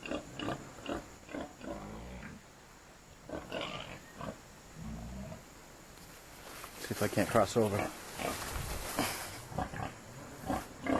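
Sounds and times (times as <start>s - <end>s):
pigs grunting: 9.0s - 10.9s.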